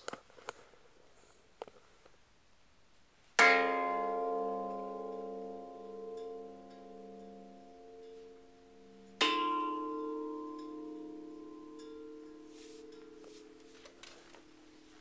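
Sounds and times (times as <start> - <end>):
crystal plate ringing: 3.4 - 15.0.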